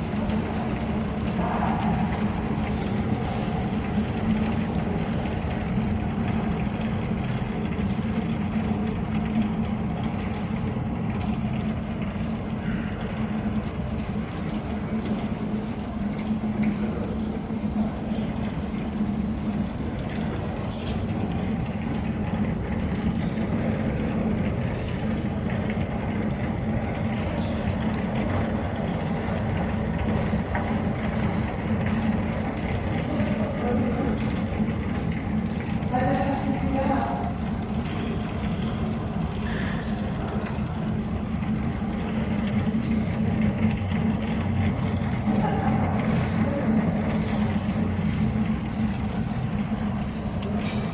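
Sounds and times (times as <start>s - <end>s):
constant low hum: 0.0s - 50.9s
low rumble of vehicle noise: 0.0s - 50.9s.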